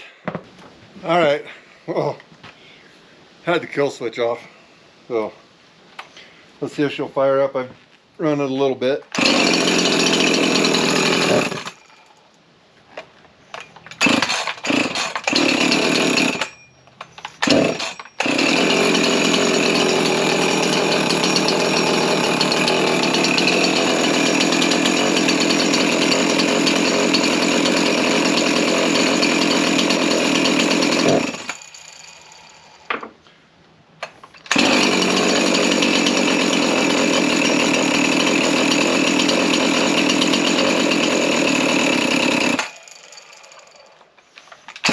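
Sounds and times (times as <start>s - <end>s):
chainsaw engine running: 9.1s - 11.9s, 14.0s - 16.5s, 17.4s - 32.8s, 34.5s - 44.0s.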